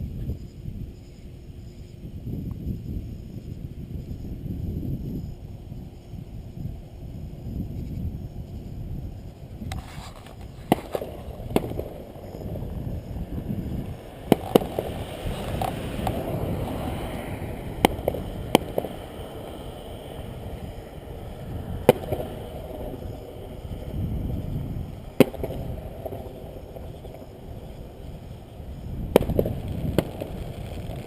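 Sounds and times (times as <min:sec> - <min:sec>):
fireworks hissing: 0:05.1 - 0:31.0
fireworks shells bursting: 0:09.6 - 0:23.9, 0:24.6 - 0:31.0.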